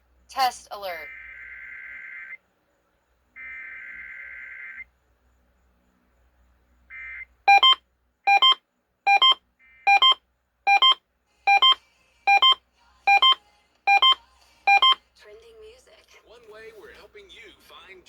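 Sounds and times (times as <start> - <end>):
electronic alarm double beeps: 7.5 - 15.0.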